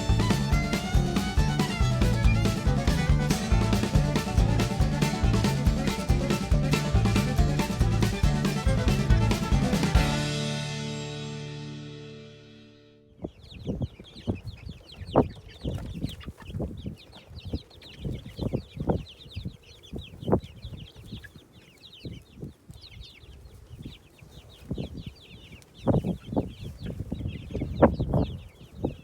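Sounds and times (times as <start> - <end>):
low thumps and rumbles: 0.0 - 11.9
chicks peeping: 0.0 - 12.2, 13.1 - 29.0.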